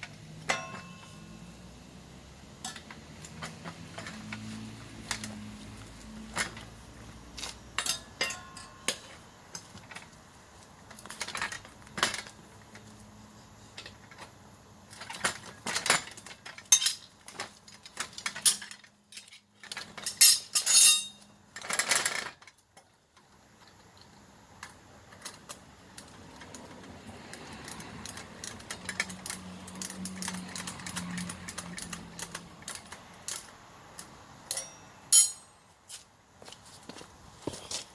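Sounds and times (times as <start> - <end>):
metal hand tools clinking: 0.5 - 1.3, 7.4 - 9.1, 16.7 - 17.1, 18.1 - 21.3, 28.8 - 36.0.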